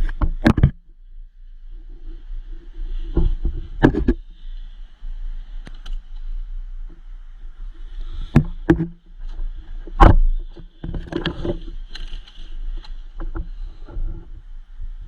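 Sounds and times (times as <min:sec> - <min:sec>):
sharp knocks and thumps: 0:00.0 - 0:00.8, 0:08.3 - 0:09.0.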